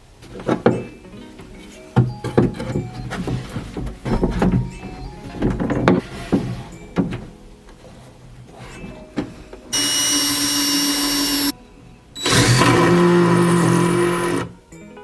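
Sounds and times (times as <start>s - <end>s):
power drill driving screws: 8.5s - 11.6s, 12.2s - 14.6s.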